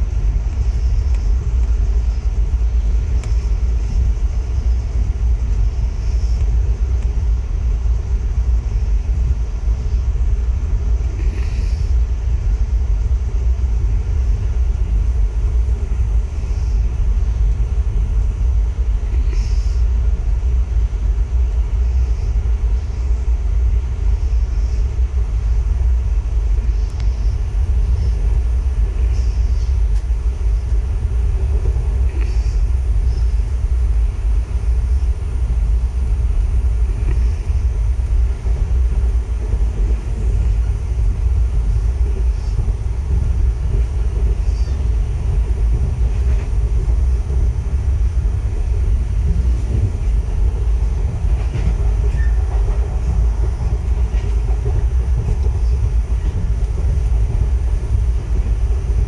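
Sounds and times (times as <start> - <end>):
train wheels rumbling on rail: 0.0 - 59.0
faint track clicks: 26.6 - 27.1, 51.3 - 57.2.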